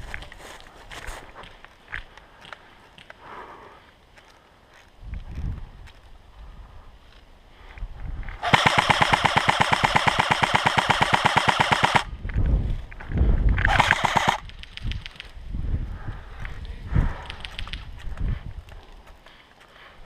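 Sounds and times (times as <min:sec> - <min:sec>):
airsoft gun firing full auto: 0:08.4 - 0:12.1, 0:13.6 - 0:14.4.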